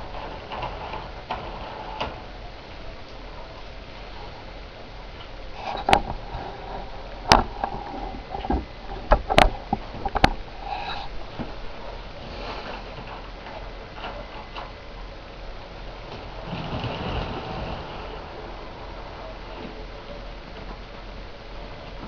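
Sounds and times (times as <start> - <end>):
model train running hum: 10.2 - 22.0.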